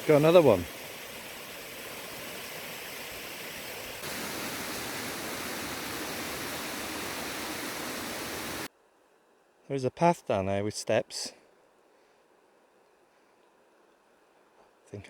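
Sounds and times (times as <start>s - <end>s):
waterfall rushing: 0.0s - 8.7s.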